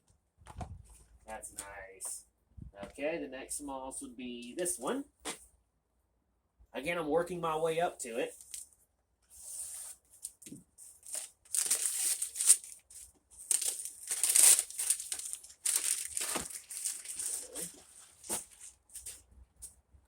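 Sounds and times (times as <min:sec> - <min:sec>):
wrapping paper crinkling and tearing: 0:11.0 - 0:19.2.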